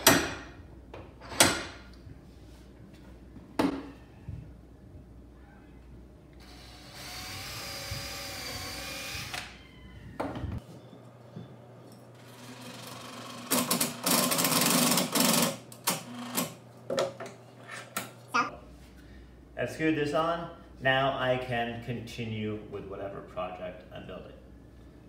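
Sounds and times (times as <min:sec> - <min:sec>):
power drill whining: 0:06.4 - 0:09.6.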